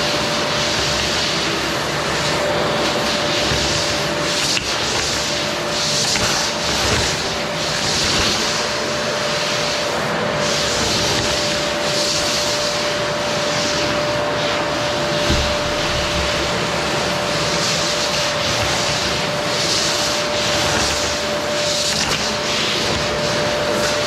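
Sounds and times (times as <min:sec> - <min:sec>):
vacuum cleaner running: 0:00.0 - 0:24.0.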